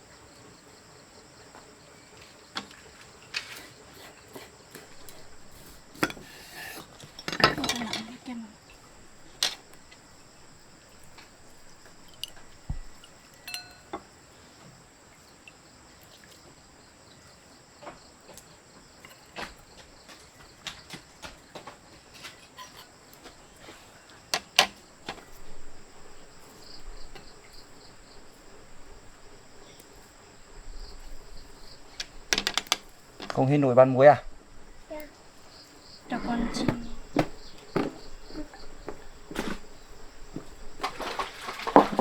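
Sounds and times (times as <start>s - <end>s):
insects chirring: 0.0s - 42.0s
light clicks and knocks: 30.8s - 33.5s.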